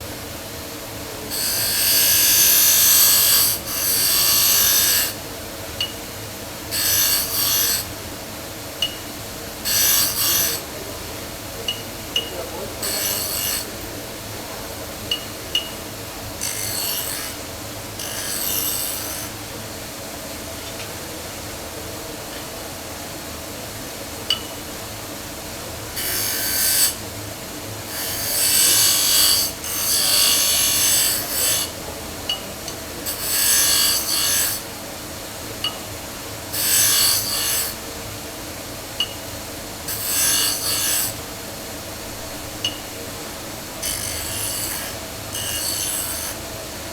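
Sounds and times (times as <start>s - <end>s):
metal bar rasping: 33.0s - 34.6s, 39.9s - 41.2s, 42.1s - 46.4s.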